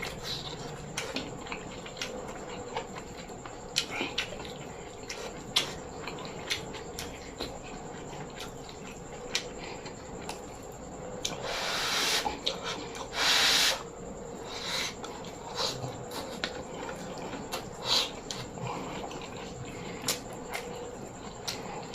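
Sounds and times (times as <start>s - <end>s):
chewing with wet mouth clicks: 0.0s - 11.5s, 12.3s - 13.1s, 14.6s - 21.9s.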